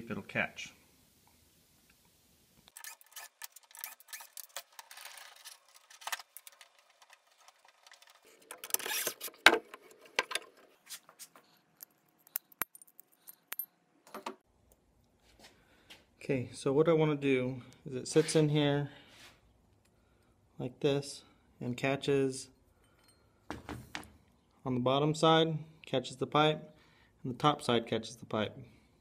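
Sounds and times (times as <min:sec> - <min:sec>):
metal parts clinking and rattling: 0:02.7 - 0:14.3.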